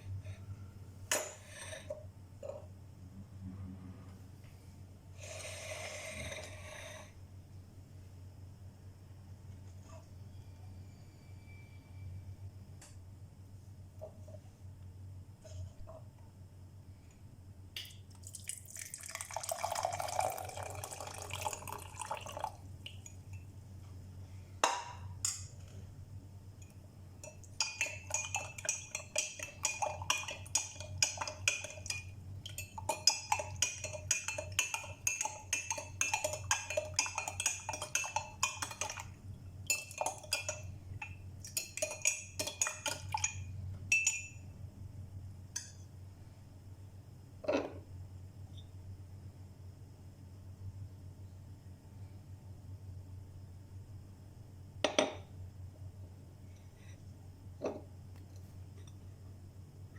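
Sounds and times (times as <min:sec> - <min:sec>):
liquid being poured: 0:18.1 - 0:23.1
spoon clinking in a glass: 0:26.6 - 0:39.0, 0:39.7 - 0:44.4.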